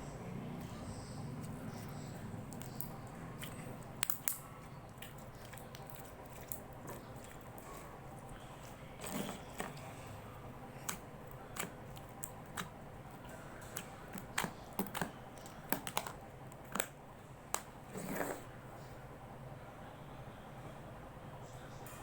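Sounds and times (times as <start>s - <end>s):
slime squish: 1.4s - 18.5s.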